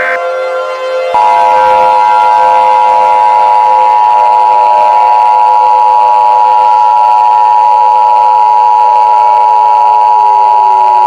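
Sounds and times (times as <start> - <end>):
warning siren chord: 0.0 - 11.0.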